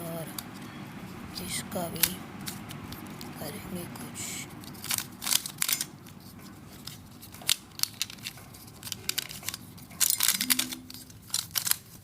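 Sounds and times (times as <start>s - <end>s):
puzzle pieces clicking: 7.4s - 12.0s.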